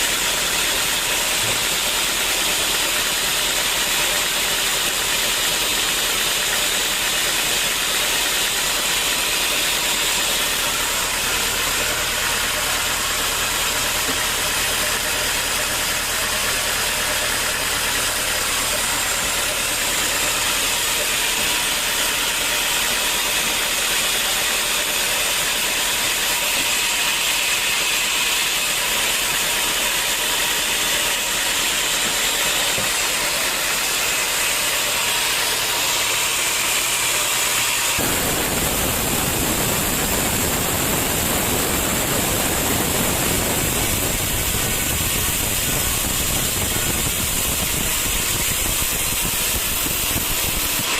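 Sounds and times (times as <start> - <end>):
sawmill saw hissing: 0.0 - 50.9
low rumble: 38.0 - 46.1.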